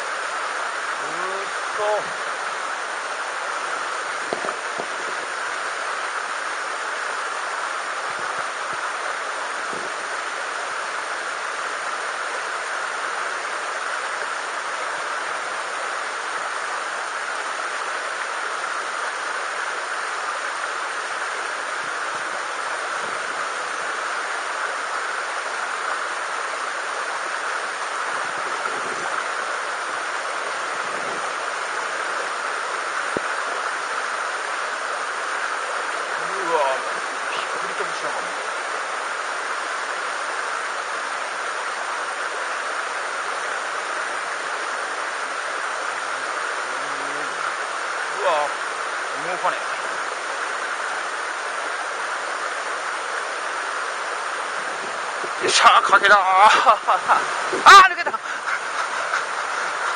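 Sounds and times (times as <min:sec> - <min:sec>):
water rushing over rocks: 0:00.0 - 0:59.9.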